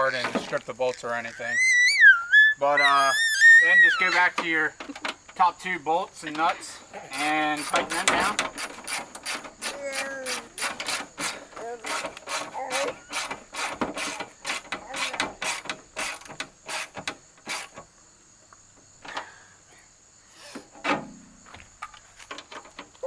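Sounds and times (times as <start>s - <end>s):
hand ratchet clicking: 7.1s - 17.7s.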